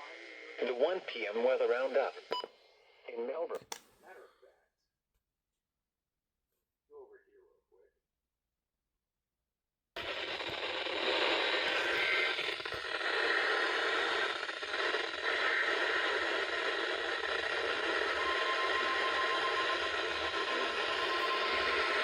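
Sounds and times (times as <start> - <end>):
radio static hiss: 0.0 - 2.3, 10.0 - 22.0.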